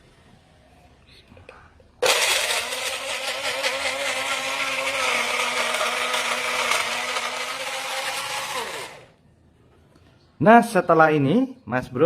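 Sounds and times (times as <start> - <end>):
electric blender running: 2.0 - 9.2.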